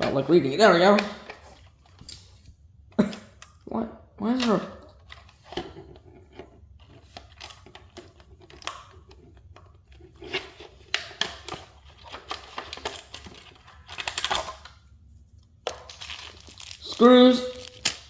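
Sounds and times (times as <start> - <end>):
plastic packaging crinkling: 15.7 - 18.0.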